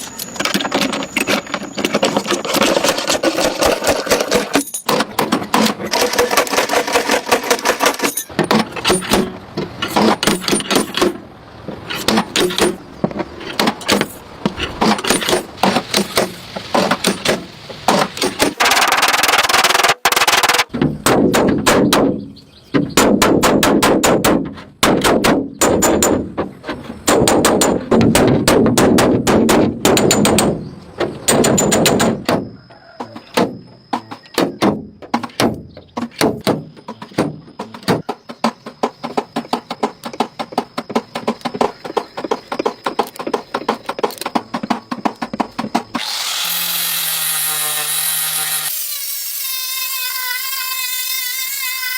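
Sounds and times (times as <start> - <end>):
tool hammering on sheet metal: 22.8 - 26.3, 27.1 - 30.6.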